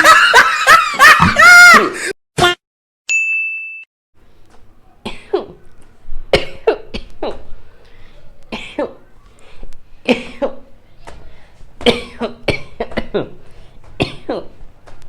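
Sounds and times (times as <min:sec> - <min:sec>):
person coughing: 0:05.0 - 0:05.6, 0:06.3 - 0:07.6, 0:10.0 - 0:10.7, 0:11.8 - 0:14.6.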